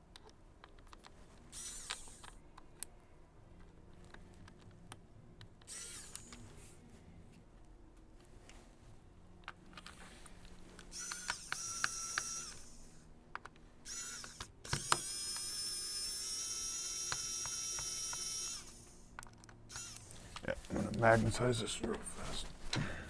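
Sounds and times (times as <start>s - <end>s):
small electric motor whining: 1.5s - 2.4s, 5.6s - 6.8s, 10.8s - 13.2s, 13.8s - 20.8s.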